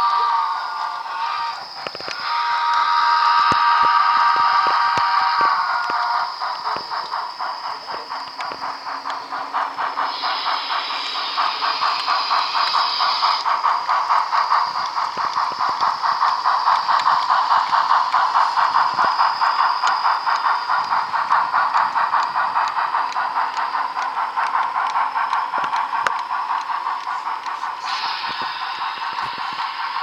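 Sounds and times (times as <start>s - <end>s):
model steam locomotive chuffing: 0.0s - 30.0s
steam hiss: 0.0s - 30.0s.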